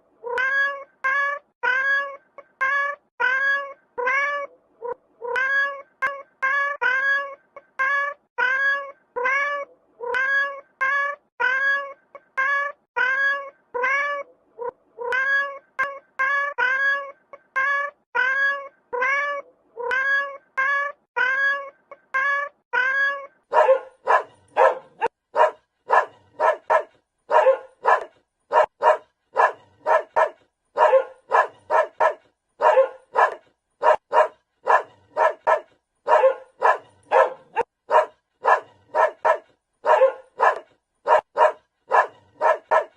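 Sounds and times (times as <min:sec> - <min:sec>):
cat meowing: 0:00.2 - 0:23.4
dog barking rapidly: 0:23.5 - 0:42.9.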